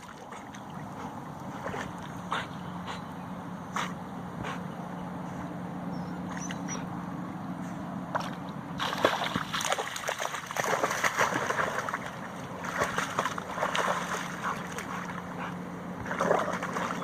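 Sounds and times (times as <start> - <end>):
water splashing and sloshing: 0.0 - 3.0, 7.7 - 17.0
steady low hum: 0.0 - 17.0.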